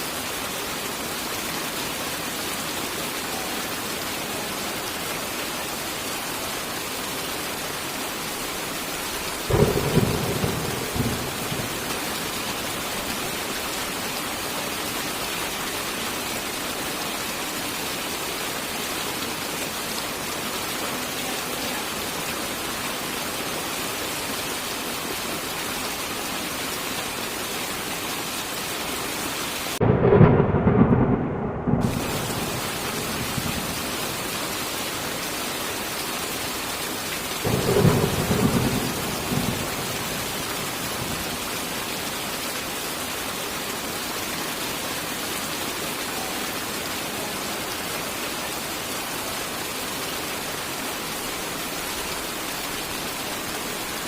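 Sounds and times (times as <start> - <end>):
heavy rain: 0.0 - 54.0
thunderclaps rumbling: 9.5 - 12.3, 29.8 - 34.2, 37.5 - 41.4.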